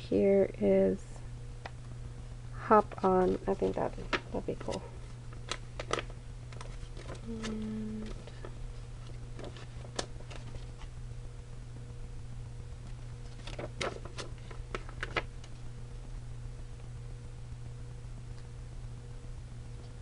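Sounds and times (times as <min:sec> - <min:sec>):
low electrical hum: 0:00.0 - 0:20.0
stickers and paper clicking: 0:02.8 - 0:04.8, 0:05.4 - 0:08.6, 0:09.3 - 0:10.9, 0:13.3 - 0:15.6.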